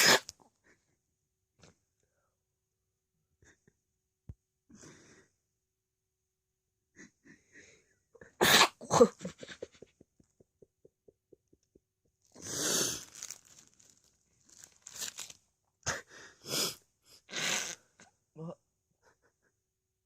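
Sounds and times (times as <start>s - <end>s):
person sneezing: 0.0s - 0.3s, 8.4s - 9.2s.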